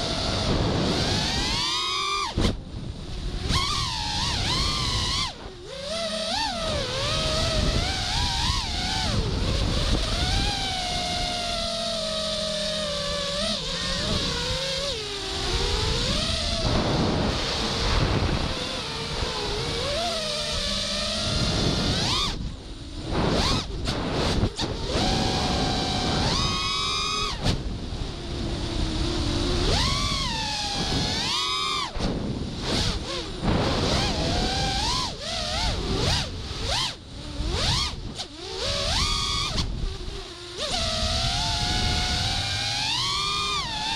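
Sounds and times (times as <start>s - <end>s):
drone motors whining: 0.0s - 43.9s
wind rush: 14.0s - 43.0s.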